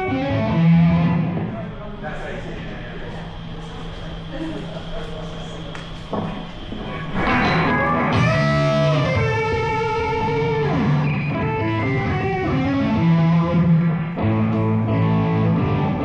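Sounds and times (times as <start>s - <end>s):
bass guitar: 0.0s - 1.9s, 6.1s - 16.0s
electric guitar sustained notes: 0.0s - 16.0s.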